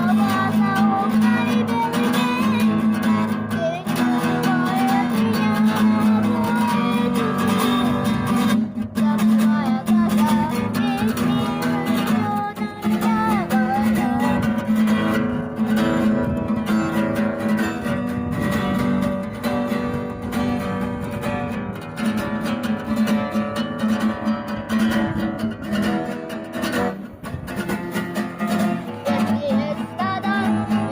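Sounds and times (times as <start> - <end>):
acoustic guitar strumming: 0.0 - 30.9.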